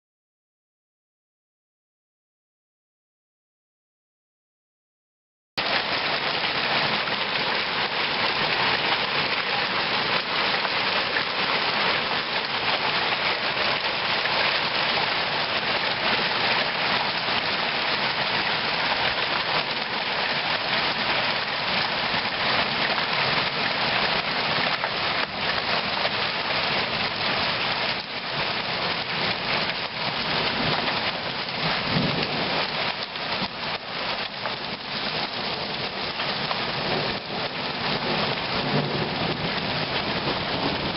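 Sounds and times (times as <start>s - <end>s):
hail clattering: 5.6s - 40.9s
sharp hail strikes: 29.0s - 40.9s.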